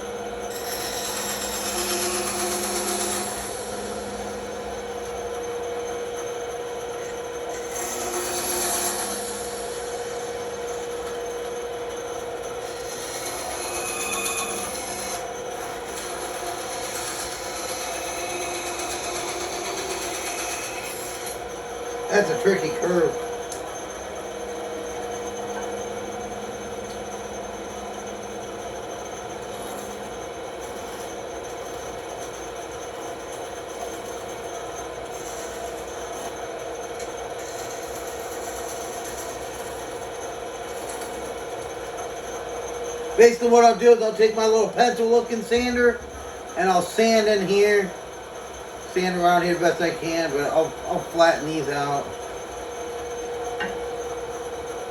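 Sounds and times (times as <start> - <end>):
bandsaw cutting wood: 0.0 - 4.2, 7.5 - 11.2, 12.6 - 23.6, 43.2 - 47.9, 48.9 - 52.0.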